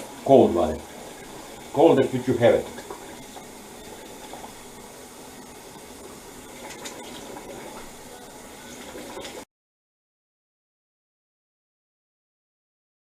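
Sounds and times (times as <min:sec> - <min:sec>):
tap water running into sink: 0:00.0 - 0:04.8, 0:05.5 - 0:08.0, 0:08.6 - 0:09.4.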